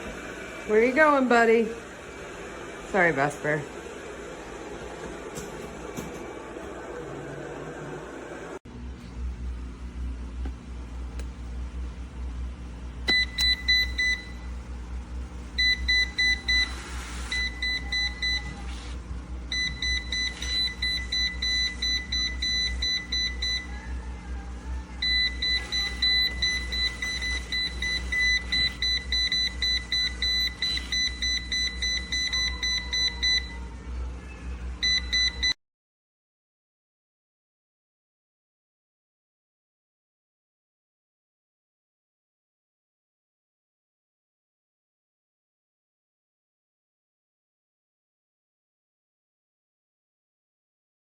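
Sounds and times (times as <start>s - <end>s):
steady low hum: 0.0s - 35.6s
electronic alarm beeping: 13.1s - 14.4s, 15.6s - 18.6s, 19.5s - 23.7s, 25.0s - 33.6s, 34.8s - 35.6s.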